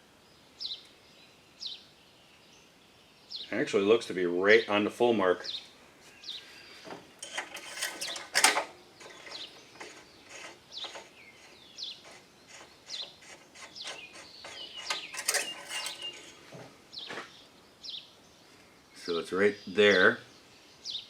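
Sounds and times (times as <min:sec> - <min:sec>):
small birds chirping: 0:00.2 - 0:21.0
clatter of lawn mower parts: 0:06.9 - 0:16.7.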